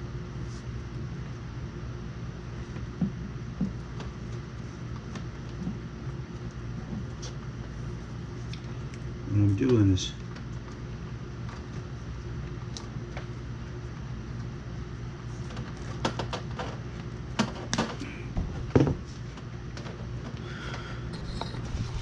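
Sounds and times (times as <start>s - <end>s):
air conditioner humming: 0.0s - 22.0s
clicks and knocks of wires: 15.4s - 20.4s.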